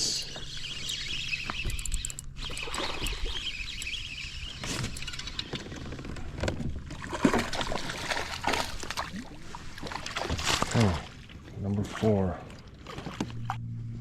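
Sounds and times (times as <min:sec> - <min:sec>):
water splashing: 0:06.9 - 0:13.6.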